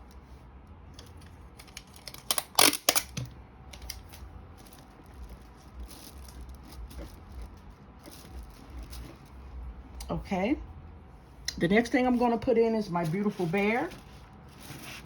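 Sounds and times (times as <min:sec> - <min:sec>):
paper and packaging crinkling: 0:01.0 - 0:09.8, 0:12.1 - 0:15.0.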